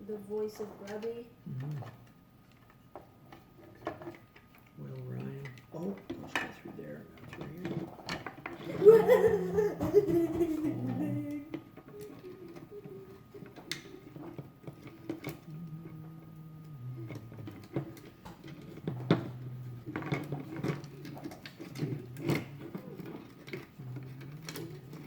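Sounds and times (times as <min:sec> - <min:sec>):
low hum: 0:15.1 - 0:25.0.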